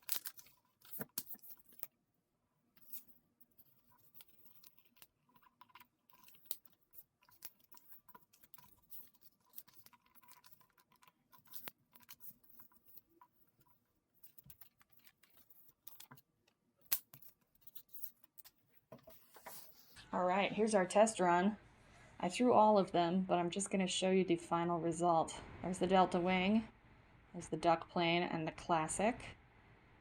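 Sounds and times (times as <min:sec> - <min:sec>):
paper crinkling: 0:00.0 - 0:01.9, 0:02.8 - 0:20.0.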